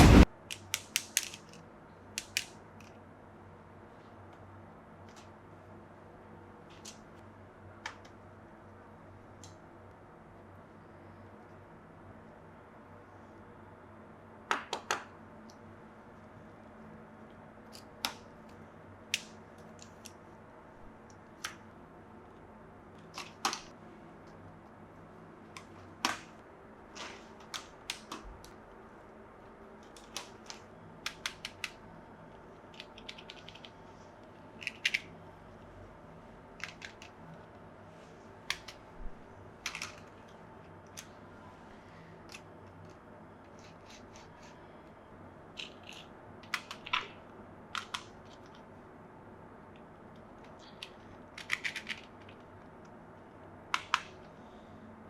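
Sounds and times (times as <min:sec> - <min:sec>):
plastic items clicking in hands: 0:00.5 - 0:01.6, 0:02.2 - 0:03.0, 0:29.8 - 0:31.8, 0:32.6 - 0:33.8, 0:34.6 - 0:35.1, 0:36.6 - 0:37.6, 0:39.6 - 0:41.1, 0:45.6 - 0:48.7, 0:49.7 - 0:52.9, 0:53.7 - 0:54.4.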